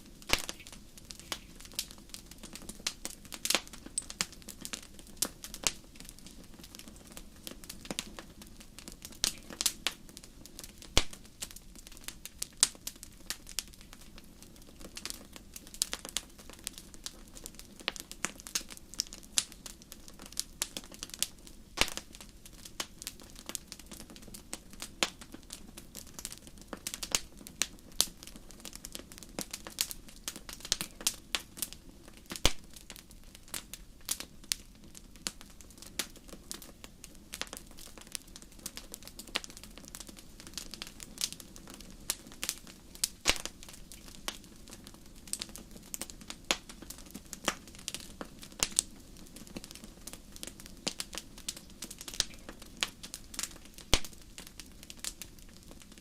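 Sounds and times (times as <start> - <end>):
wood fire crackling and popping: 0.0 - 56.0.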